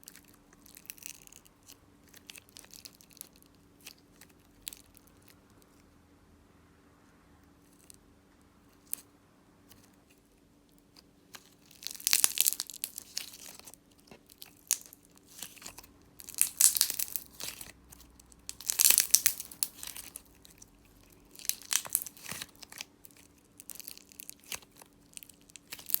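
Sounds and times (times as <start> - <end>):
putty crackling and popping: 11.3 - 26.0.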